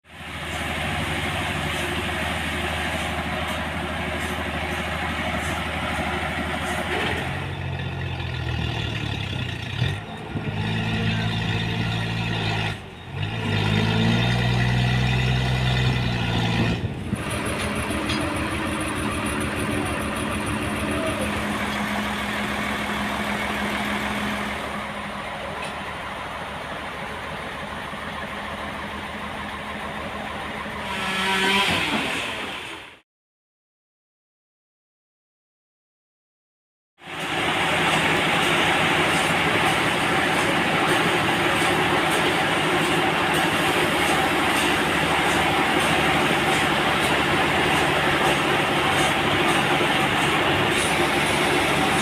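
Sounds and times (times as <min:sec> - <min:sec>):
heavy engine running: 0:00.0 - 0:33.0, 0:37.0 - 0:52.0.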